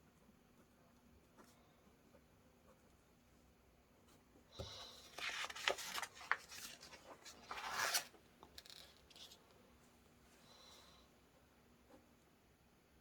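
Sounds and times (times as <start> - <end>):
paper rustling on a desk: 4.6 - 9.4.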